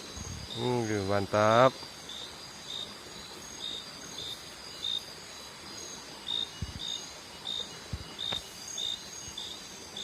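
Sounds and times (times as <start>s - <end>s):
insect chirps: 0.0s - 10.0s.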